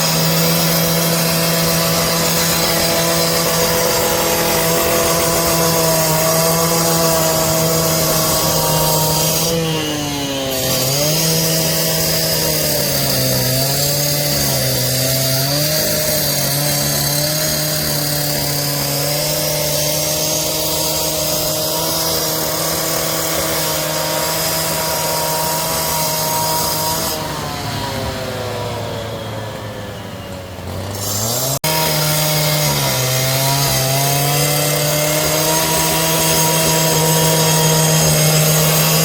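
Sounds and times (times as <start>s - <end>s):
power saw motor running: 0.0s - 39.0s.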